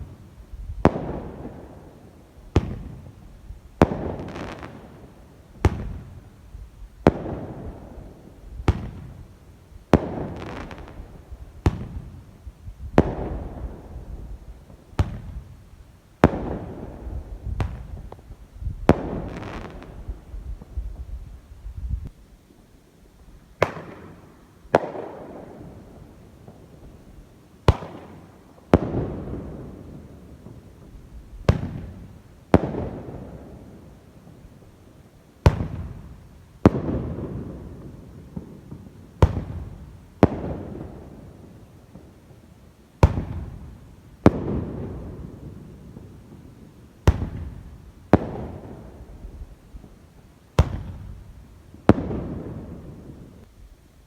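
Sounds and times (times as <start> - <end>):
fireworks bangs with echo: 0.0 - 6.4, 7.0 - 21.1, 23.6 - 34.5, 35.4 - 42.4, 43.0 - 53.4.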